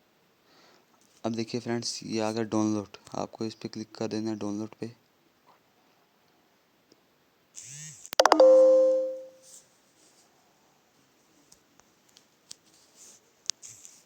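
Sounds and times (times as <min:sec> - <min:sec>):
electronic beep tone: 0:08.2 - 0:09.4.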